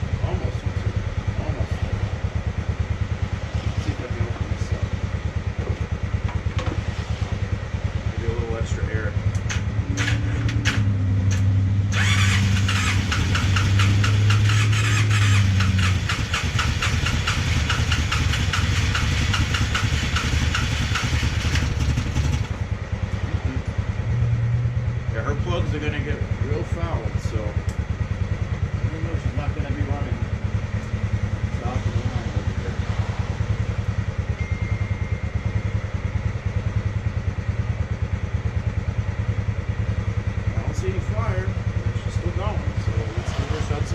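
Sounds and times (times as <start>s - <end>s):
engine running rough: 0.0s - 43.9s
rapid ticking rattle: 12.0s - 22.5s.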